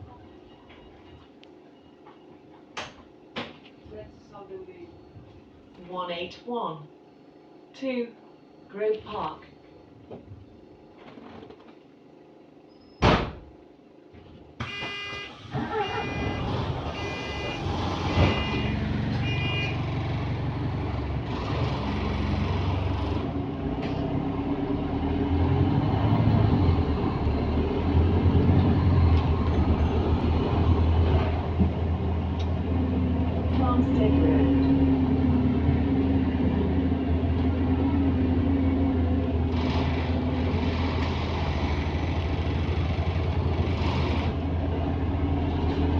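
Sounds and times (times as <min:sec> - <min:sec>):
bus diesel engine running: 0:00.0 - 0:05.8, 0:14.2 - 0:45.9
door warning beeps: 0:14.6 - 0:19.8.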